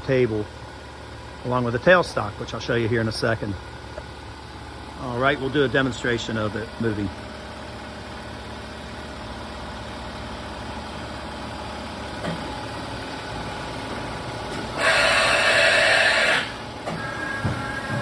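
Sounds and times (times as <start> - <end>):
machine mechanical hum: 0.0 - 18.0
loud hiss: 14.8 - 16.6.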